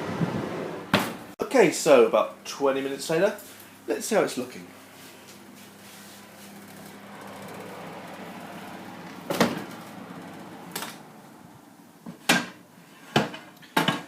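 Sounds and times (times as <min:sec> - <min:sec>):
oven hum: 0:00.0 - 0:13.3.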